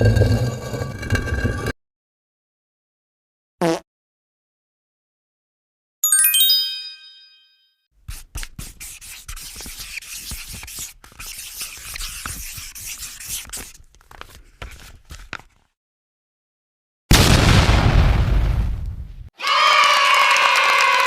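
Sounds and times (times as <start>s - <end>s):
sparkling chime: 6.0s - 7.7s
scratchy scribbling strokes: 8.1s - 15.2s.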